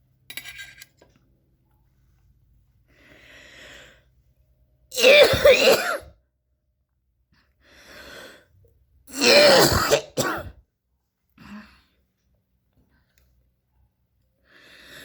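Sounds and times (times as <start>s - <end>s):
woman coughing: 5.0s - 6.1s, 9.2s - 10.6s.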